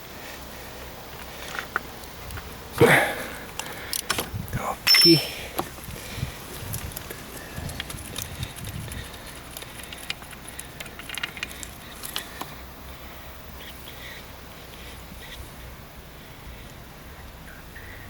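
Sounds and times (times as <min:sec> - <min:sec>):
faint steady hiss: 0:00.0 - 0:18.0
metal parts clicking and rattling: 0:03.4 - 0:05.7, 0:06.5 - 0:12.6.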